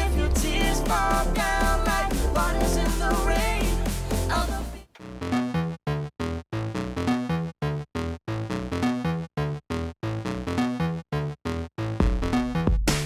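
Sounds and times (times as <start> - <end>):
synthesizer chord stabs: 0.0 - 4.8
deep bass: 0.0 - 13.0.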